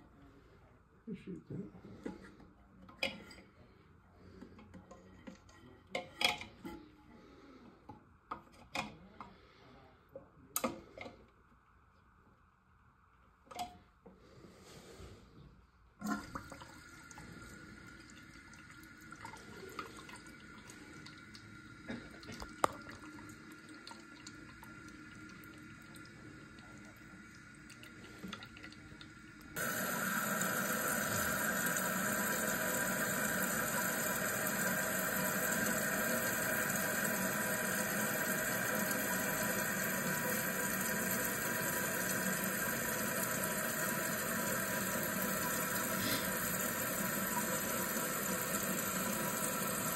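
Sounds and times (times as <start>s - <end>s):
water rushing into toilet tank: 16.0s - 49.9s.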